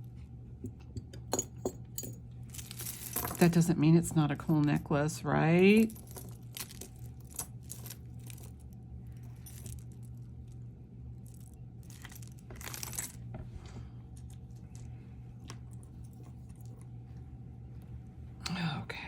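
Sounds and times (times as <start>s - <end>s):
steady low hum: 0.0s - 19.0s
necklaces jingling and clinking: 1.3s - 3.7s, 5.6s - 10.3s, 11.2s - 13.3s.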